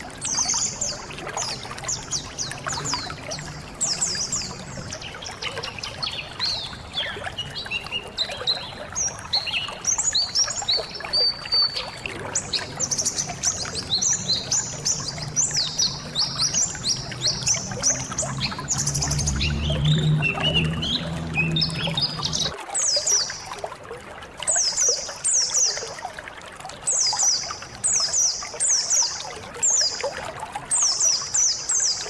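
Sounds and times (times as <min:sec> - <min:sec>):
water trickling: 0:00.0 - 0:32.0
flock of birds twittering: 0:00.3 - 0:23.3.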